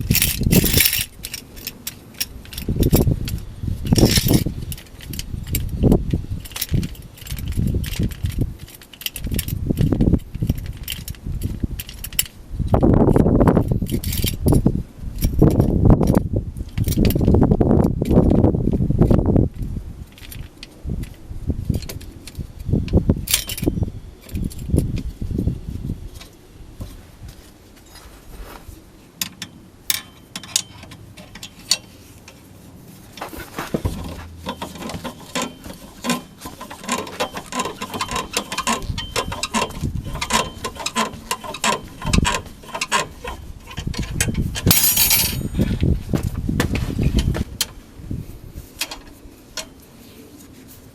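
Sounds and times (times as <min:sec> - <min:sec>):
metal tool clicks and knocks: 0:00.1 - 0:01.1, 0:44.7 - 0:45.6.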